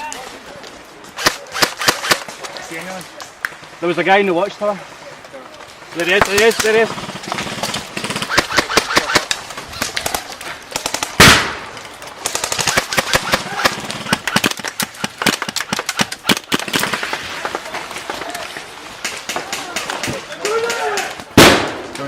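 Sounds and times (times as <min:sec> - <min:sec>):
airsoft guns firing clicks: 0:01.2 - 0:03.0, 0:06.0 - 0:17.6.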